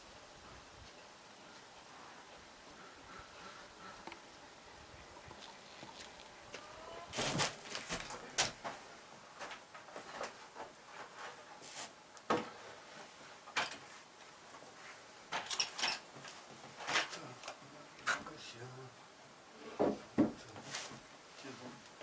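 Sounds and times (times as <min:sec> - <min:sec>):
knocks and scrapes of woodwork: 0:09.4 - 0:12.8, 0:19.6 - 0:21.1.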